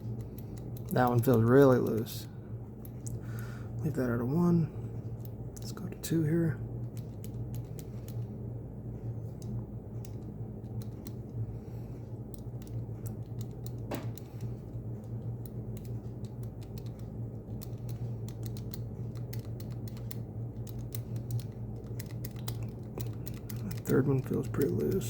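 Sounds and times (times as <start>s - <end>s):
combination lock wheels clicking: 0.0s - 3.1s, 12.2s - 25.0s
steady low hum: 0.0s - 25.0s.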